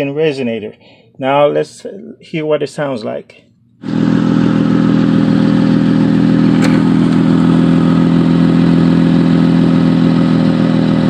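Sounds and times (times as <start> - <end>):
car engine idling loud exhaust: 3.8 - 11.0.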